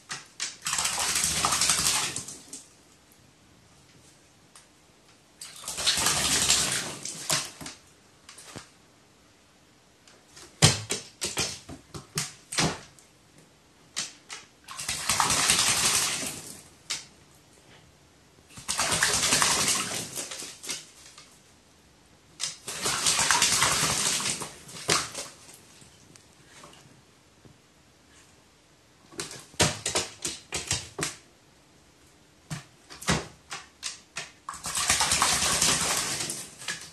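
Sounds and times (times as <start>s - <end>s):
bird splashing in water: 5.4s - 7.6s, 14.7s - 16.6s, 18.6s - 20.9s, 22.4s - 25.4s, 34.5s - 36.9s.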